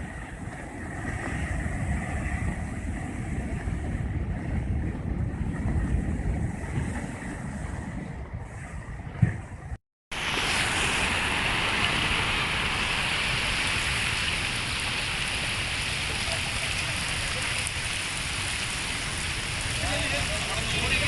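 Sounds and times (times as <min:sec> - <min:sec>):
heavy rain pouring: 0:10.1 - 0:21.0.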